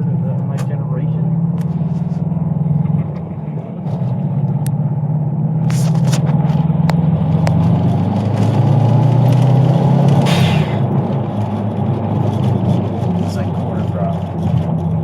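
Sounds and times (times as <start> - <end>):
car engine at part throttle: 0.0 - 15.0
short rushing hiss: 10.3 - 10.9.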